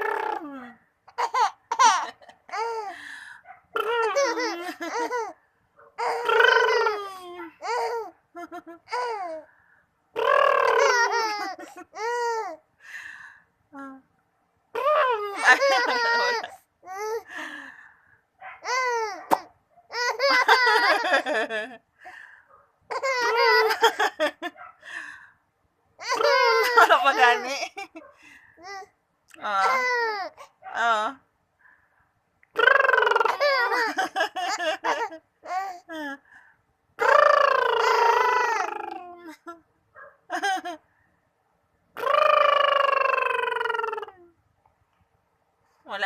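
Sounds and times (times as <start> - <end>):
baby laughing: 1.1 - 2.9, 3.8 - 5.4, 6.0 - 9.5, 10.2 - 12.6, 14.8 - 17.3, 18.6 - 21.8, 22.9 - 24.6, 26.0 - 28.9, 29.5 - 30.6, 32.5 - 36.2, 37.0 - 39.6.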